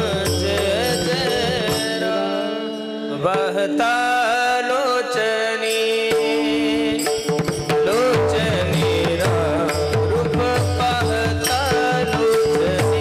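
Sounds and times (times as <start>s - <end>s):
person singing devotional song: 0.0s - 13.0s.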